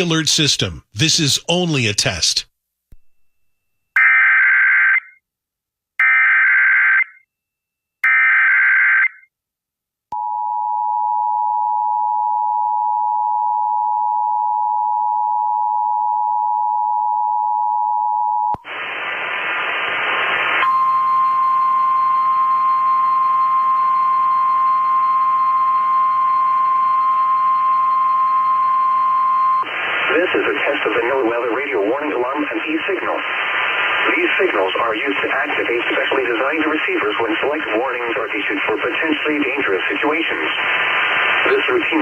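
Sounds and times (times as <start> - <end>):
radio hiss: 18.6 - 20.6, 29.6 - 42.0
radio static burst: 29.6 - 42.0.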